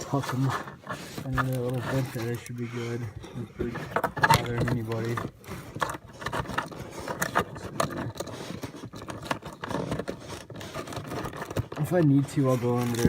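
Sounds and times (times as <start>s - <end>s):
scraping and rustling of plastic: 0.0s - 13.0s.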